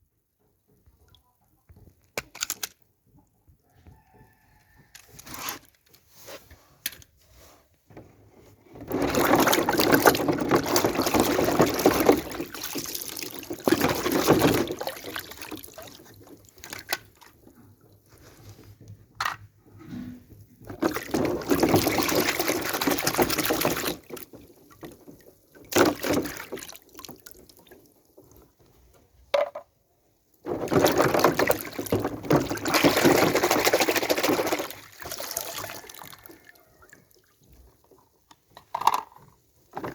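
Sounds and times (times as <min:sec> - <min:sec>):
liquid pouring: 0:30.7 - 0:36.8.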